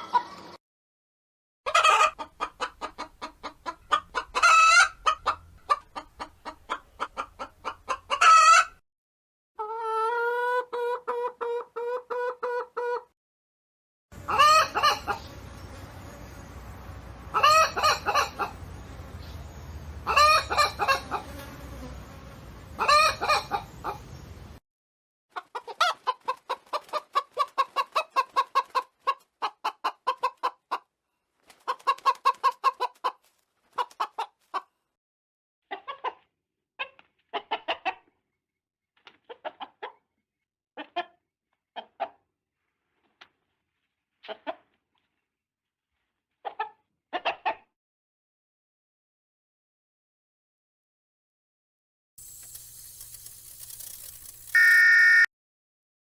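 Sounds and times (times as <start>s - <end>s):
hens clucking: 1.7s - 8.8s, 14.2s - 15.3s, 20.1s - 21.2s, 25.4s - 30.8s, 31.6s - 33.2s.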